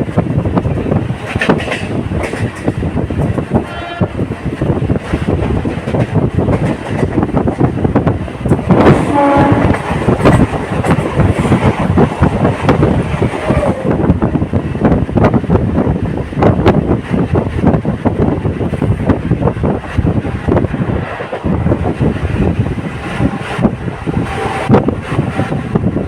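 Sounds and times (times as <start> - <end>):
train rattling along track: 0.0 - 26.0
train horn: 3.6 - 4.2, 9.0 - 10.0.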